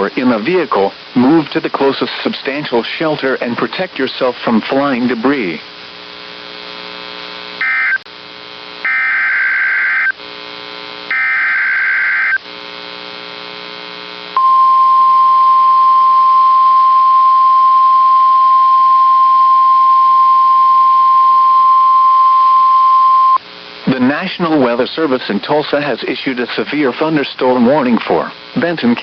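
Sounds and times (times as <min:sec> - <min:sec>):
steady warning alarm tone: 0:07.6 - 0:08.0, 0:08.8 - 0:10.2, 0:11.1 - 0:12.4.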